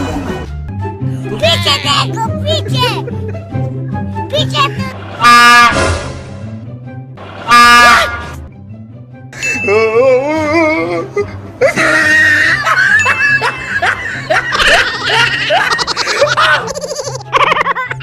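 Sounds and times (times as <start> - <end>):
laughter: 11.6 - 18.0.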